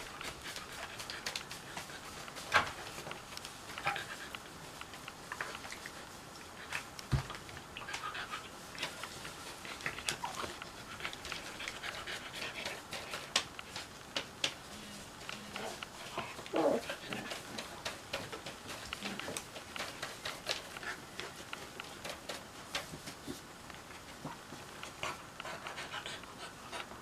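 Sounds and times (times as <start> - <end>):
puppies panting: 0.0 - 23.2, 24.6 - 27.0
puppy whimper: 16.5 - 16.9.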